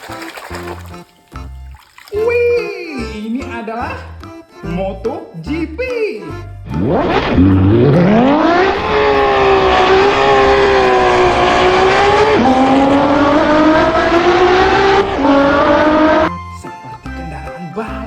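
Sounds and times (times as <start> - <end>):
racing engine at high revs: 6.6 - 16.3.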